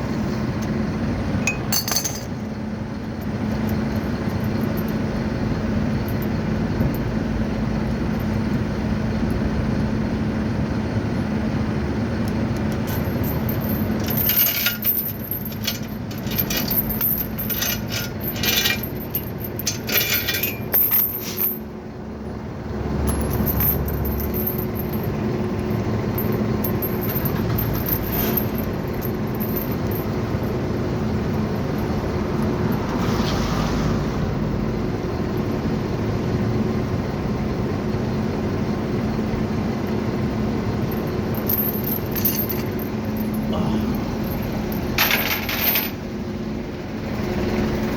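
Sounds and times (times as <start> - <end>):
truck engine running: 0.0 - 47.9
metal chains clinking and rattling: 1.5 - 2.5, 12.7 - 21.7, 23.1 - 30.6, 40.9 - 46.1.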